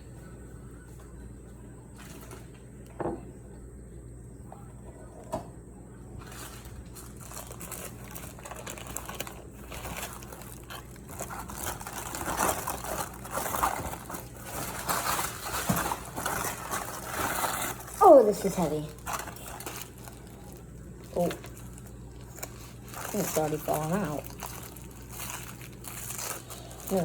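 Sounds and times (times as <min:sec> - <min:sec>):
wrapping material crinkling: 0:06.2 - 0:27.0.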